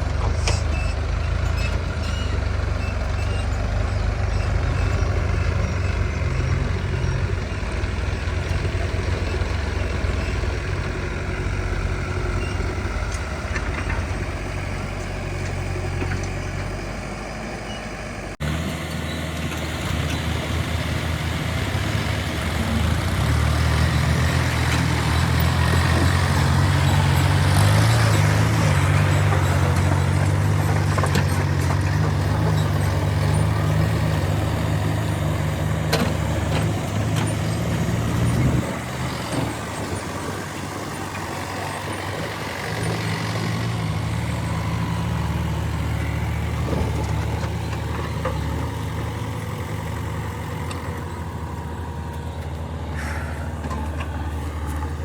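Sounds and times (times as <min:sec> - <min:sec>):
heavy diesel engine running: 0:00.0 - 0:55.0.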